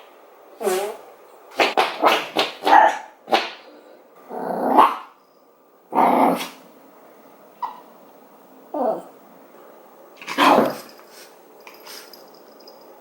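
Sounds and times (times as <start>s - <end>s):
dog barking and growling: 1.6s - 5.2s, 5.9s - 6.7s, 10.2s - 11.0s.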